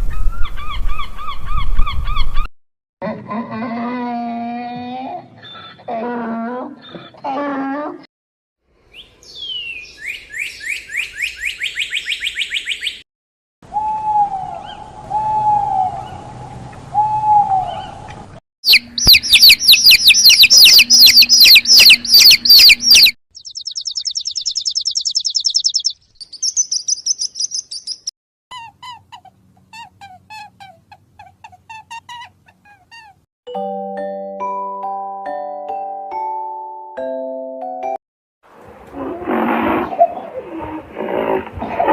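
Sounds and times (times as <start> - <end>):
birds singing and calling: 8.9 - 13.0, 18.7 - 28.1
rapid bird trill: 18.7 - 28.1.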